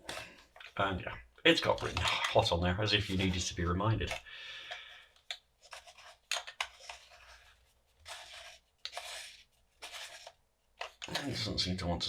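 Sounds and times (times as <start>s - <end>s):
parts scraping and rubbing: 1.6s - 11.3s.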